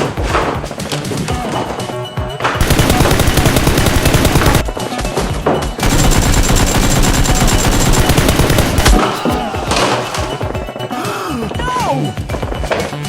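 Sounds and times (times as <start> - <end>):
background music: 0.0 - 13.0
automatic gunfire bursts: 2.6 - 4.7, 5.8 - 9.0.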